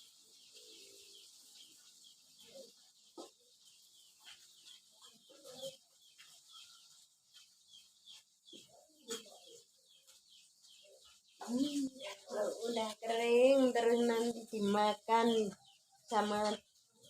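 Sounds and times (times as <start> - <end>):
fish deep-frying in oil: 0.0 - 4.9
chickens clucking: 0.0 - 17.0.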